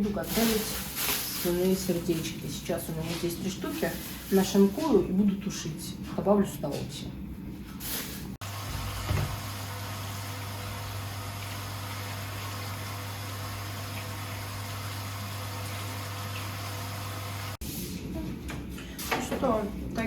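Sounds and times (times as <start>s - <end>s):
machine hum with hiss: 8.4s - 17.6s.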